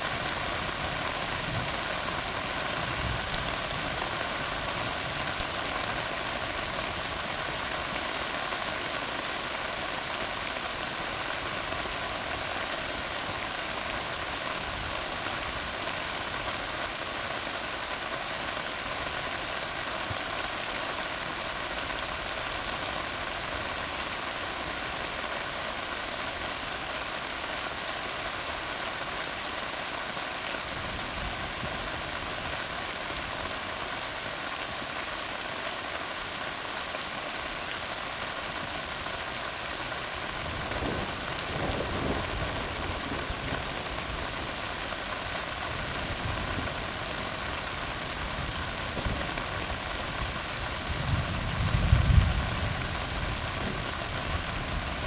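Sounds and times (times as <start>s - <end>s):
rain falling on asphalt: 0.0s - 55.0s.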